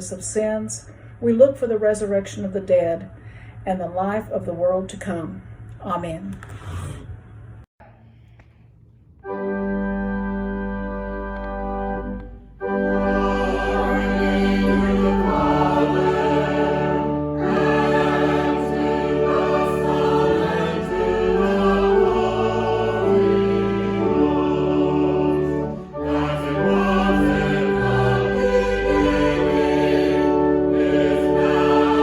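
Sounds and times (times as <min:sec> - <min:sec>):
choir singing held chords: 0:11.8 - 0:32.0.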